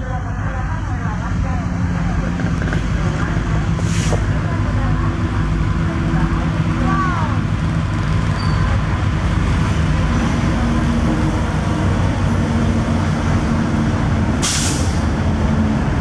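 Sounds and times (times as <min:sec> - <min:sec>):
train wagons rumbling on rails: 0:00.0 - 0:16.0
short hiss: 0:14.4 - 0:15.0.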